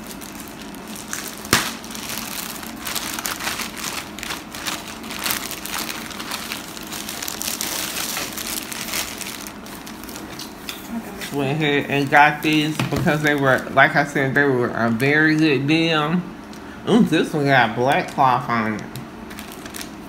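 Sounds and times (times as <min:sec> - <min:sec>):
packaging crinkling and rustling: 0:00.0 - 0:10.7, 0:12.0 - 0:13.9, 0:17.9 - 0:20.0.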